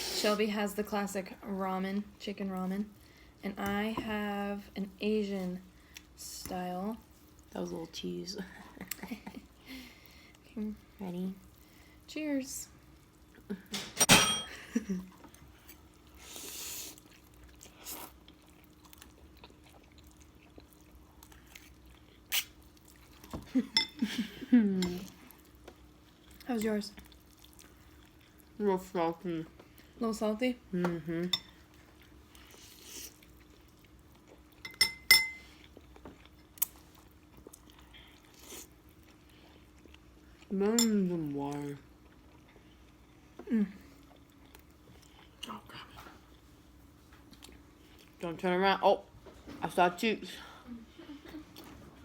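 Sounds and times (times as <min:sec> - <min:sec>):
utensils clinking against bowl: 0:13.8 - 0:14.6, 0:34.6 - 0:35.4
chewing: 0:15.1 - 0:23.5, 0:24.8 - 0:28.6, 0:35.4 - 0:40.5, 0:41.9 - 0:48.2.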